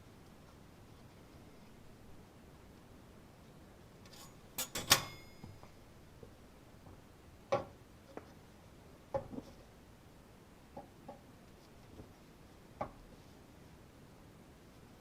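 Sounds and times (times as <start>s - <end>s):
metal objects clanking: 4.1s - 5.5s.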